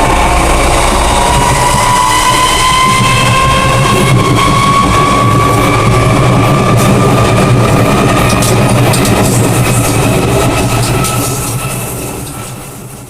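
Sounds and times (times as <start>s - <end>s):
electric train motors whining: 0.0s - 12.6s.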